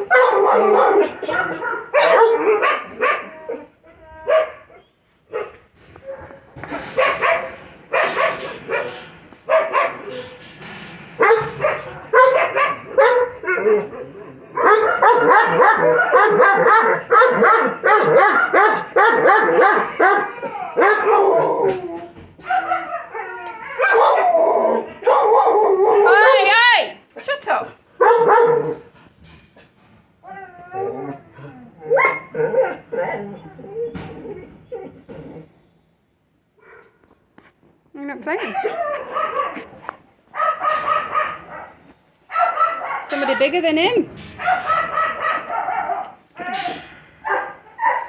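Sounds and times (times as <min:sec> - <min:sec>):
puppies barking and yipping: 0:00.0 - 0:04.6, 0:11.2 - 0:21.7, 0:38.4 - 0:48.0.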